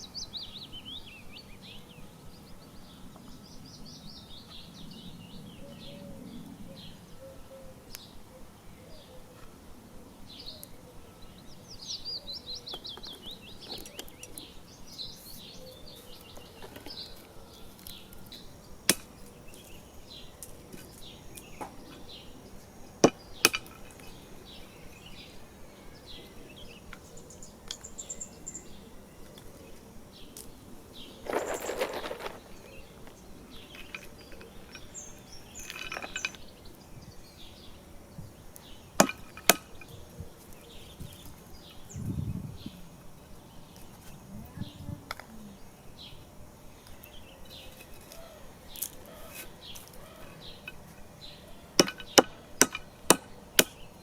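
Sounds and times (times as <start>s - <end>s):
small birds chirping: 0.0s - 54.0s
rustling burst: 18.3s - 35.0s.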